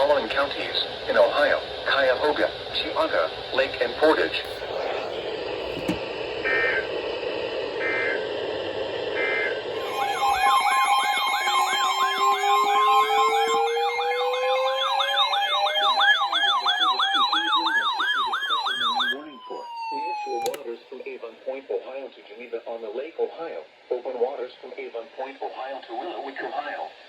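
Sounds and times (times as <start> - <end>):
radio hiss: 0.0 - 17.9, 18.8 - 27.0
electronic siren tones: 6.4 - 6.9, 7.8 - 8.2, 9.2 - 20.6
buzzy digital data bursts: 9.8 - 17.2.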